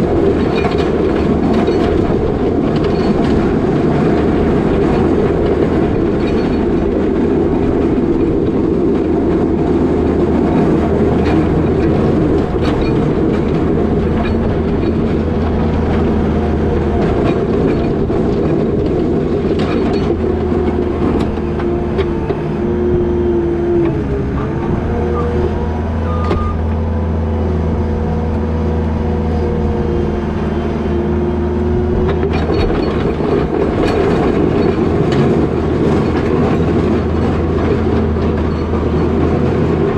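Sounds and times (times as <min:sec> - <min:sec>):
diesel engine running: 0:00.0 - 0:39.9
hydraulic whine: 0:19.5 - 0:39.9.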